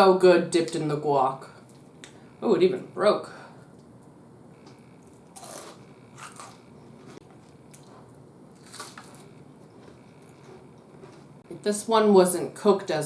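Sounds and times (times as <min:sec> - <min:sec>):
crisp crunching while chewing: 0:05.1 - 0:06.6, 0:07.7 - 0:09.3.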